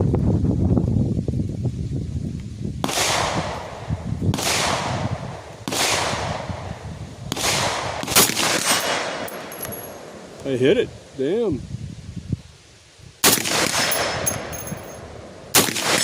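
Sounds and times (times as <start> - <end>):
rifle shots with echo: 5.6 - 6.5, 7.3 - 10.2, 13.2 - 15.0, 15.6 - 16.0.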